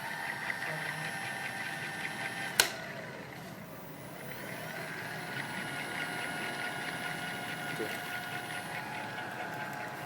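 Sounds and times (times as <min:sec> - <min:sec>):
electric motor whining: 0:00.0 - 0:10.0
sharp click: 0:02.6 - 0:02.8.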